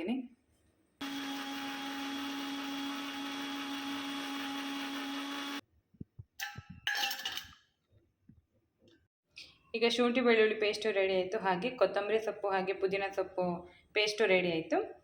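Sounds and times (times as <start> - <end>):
electric mixer grinder running: 1.0 - 5.6.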